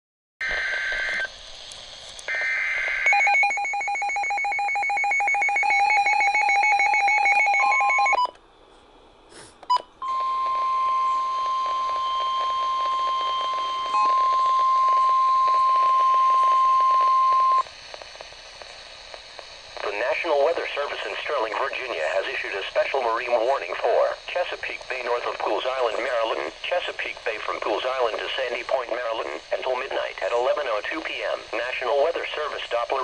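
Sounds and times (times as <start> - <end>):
rapid pulsing alarm beeps: 2.4 - 8.3
steady warning tone: 10.0 - 17.7.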